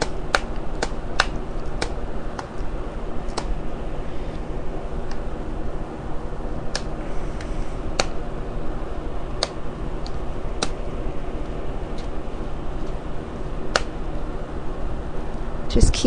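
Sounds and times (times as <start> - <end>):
steady low hum: 0.0 - 16.0
plastic clicks and snaps: 6.7 - 6.9.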